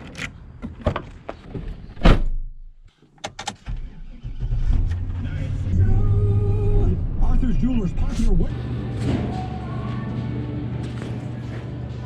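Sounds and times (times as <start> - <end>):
low vehicle rumble: 3.7 - 10.8.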